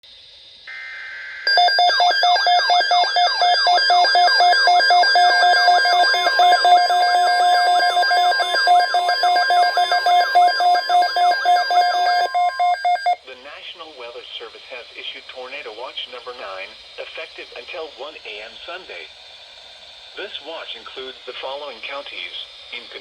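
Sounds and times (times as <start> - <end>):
electronic alarm beeps and sweeps: 0.7 - 13.2
warbling digital data burst: 1.5 - 13.2.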